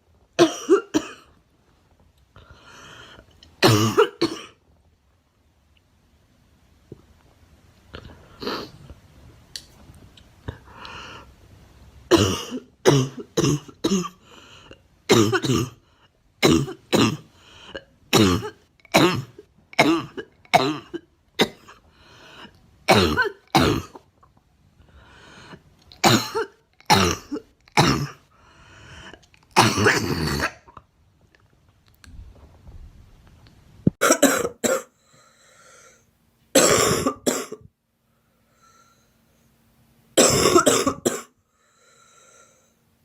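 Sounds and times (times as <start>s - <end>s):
girl coughing: 0.4s - 1.3s, 3.6s - 4.6s, 12.1s - 14.2s, 15.1s - 15.8s, 16.4s - 17.2s, 18.1s - 21.8s, 26.0s - 28.2s, 29.6s - 30.7s, 34.0s - 34.9s, 36.6s - 37.7s, 40.2s - 41.4s.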